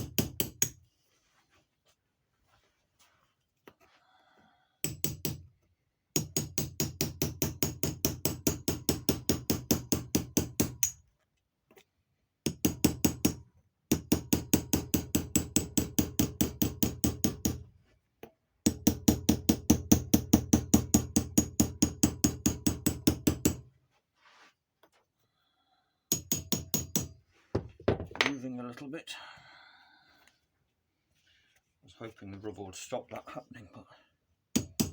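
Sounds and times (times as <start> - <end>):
hammer tapping punch on metal: 4.8 - 5.4, 26.1 - 28.3.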